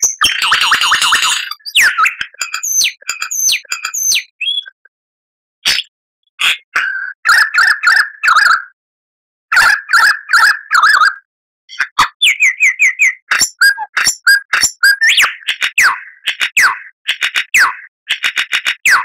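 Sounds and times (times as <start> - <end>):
lyrebird singing: 0.0 - 4.8, 9.6 - 16.8.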